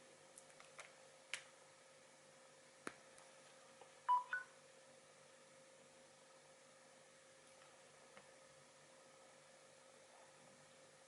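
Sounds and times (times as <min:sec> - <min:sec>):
two-note electronic beep: 0:04.1 - 0:04.5.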